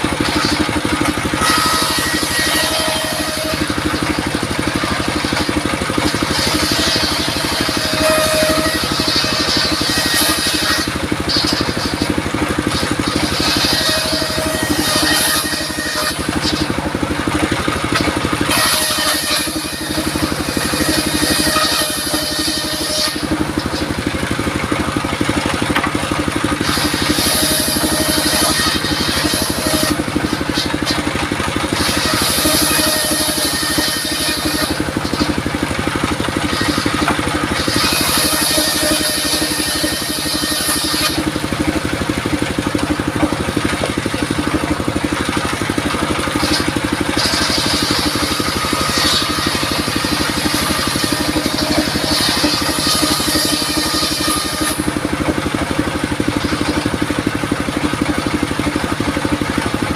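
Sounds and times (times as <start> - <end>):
circular sawmill running: 0.0 - 59.9
saw blade cutting wood: 0.0 - 59.9.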